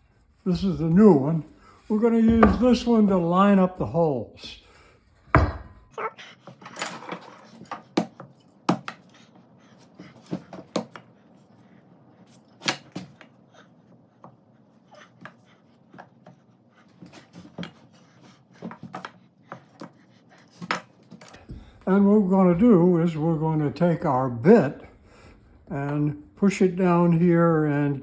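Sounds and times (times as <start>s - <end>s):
wooden parts knocking and clicking: 2.3s - 3.1s.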